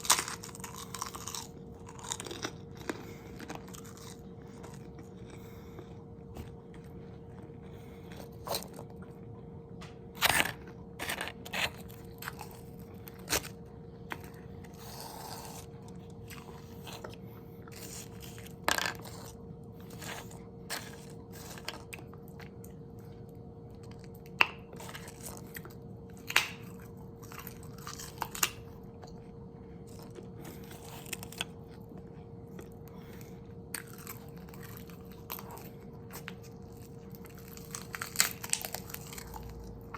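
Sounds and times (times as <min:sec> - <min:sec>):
crunchy bites into food: 0:00.0 - 0:06.6, 0:09.9 - 0:22.5, 0:23.8 - 0:29.2, 0:33.7 - 0:39.9
chewing: 0:00.0 - 0:39.9
faint steady hum: 0:00.0 - 0:39.9.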